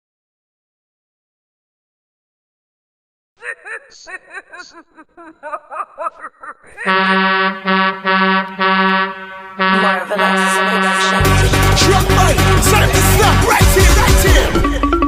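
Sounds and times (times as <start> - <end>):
truck air horn blasts: 6.8 - 13.8
dance beat: 7.4 - 15.0.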